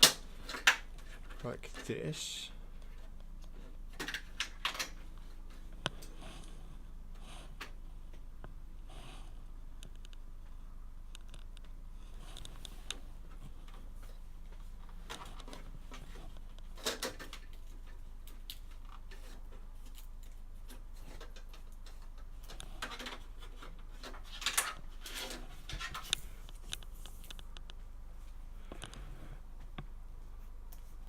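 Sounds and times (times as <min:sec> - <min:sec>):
steady low hum: 0:00.0 - 0:31.0
rustles and light clicks: 0:09.7 - 0:31.0.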